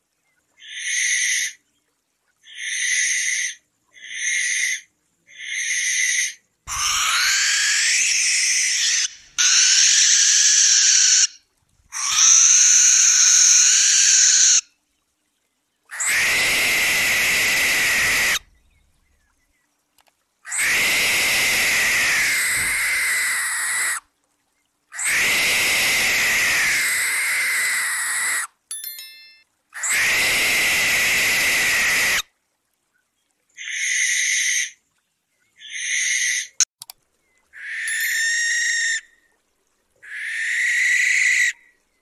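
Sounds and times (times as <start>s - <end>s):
barn owl screeching: 2.5s - 14.6s, 15.9s - 18.4s, 20.5s - 24.0s, 24.9s - 28.5s, 29.8s - 32.2s, 35.6s - 36.6s, 37.6s - 39.1s, 40.0s - 41.6s.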